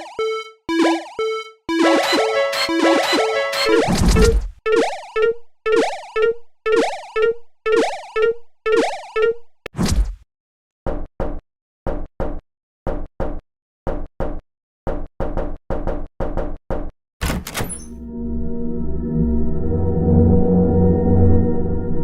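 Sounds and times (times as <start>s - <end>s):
low droning music: 18.0s - 22.0s.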